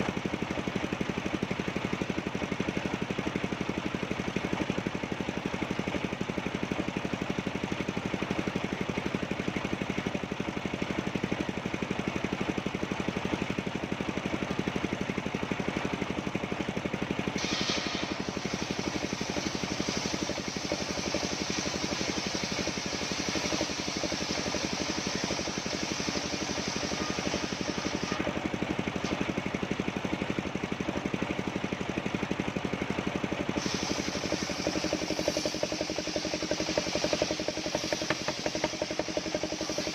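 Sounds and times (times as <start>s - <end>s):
sawmill engine running: 0.0s - 39.9s
saw cutting through wood: 17.4s - 28.4s, 33.6s - 39.9s.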